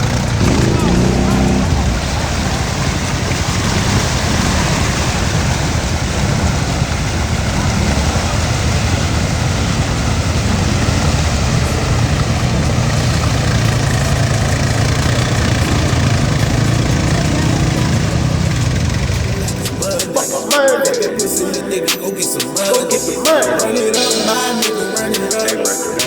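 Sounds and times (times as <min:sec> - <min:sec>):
atv engine running: 0:00.0 - 0:20.5.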